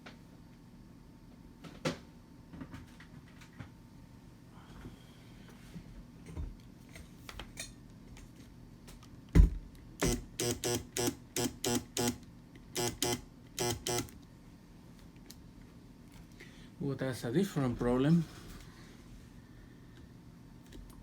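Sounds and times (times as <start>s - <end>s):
stalled blender motor buzzing: 10.0s - 12.2s, 12.8s - 14.2s.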